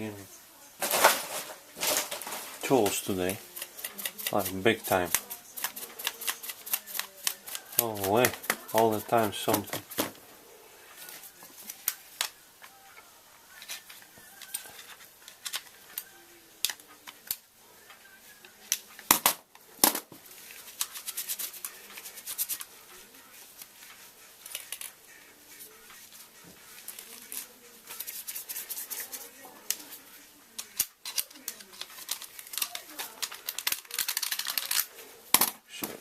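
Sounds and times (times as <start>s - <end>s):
tools and parts clicking and rattling: 30.6s - 35.6s.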